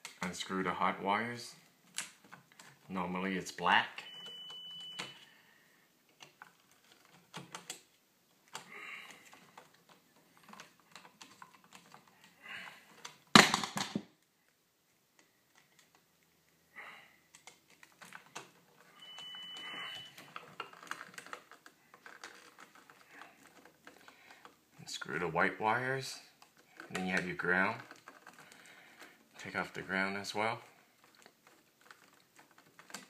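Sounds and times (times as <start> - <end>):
wires being handled: 6.1 - 13.4, 14.2 - 16.6, 17.3 - 33.0
high-pitched tone: 19.0 - 20.2.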